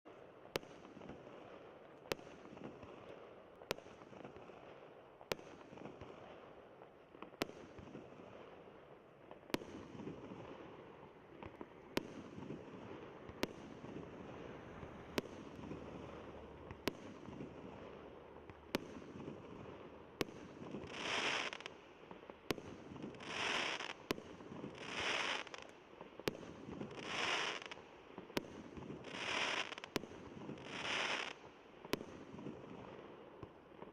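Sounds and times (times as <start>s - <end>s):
firework crackling bursts: 9.3s - 33.1s
firework bangs: 9.5s - 25.7s.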